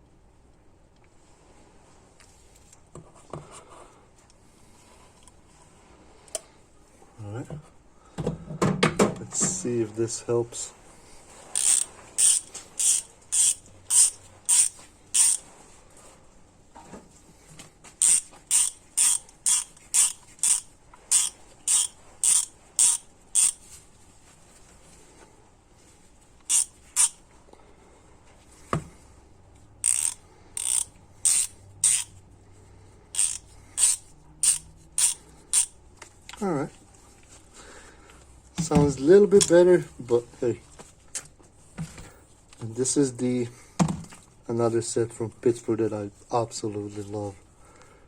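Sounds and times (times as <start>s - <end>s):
ratchet pawl clicks: 11.6s - 15.4s, 18.0s - 23.6s, 26.4s - 27.2s, 29.8s - 32.1s, 33.1s - 35.7s.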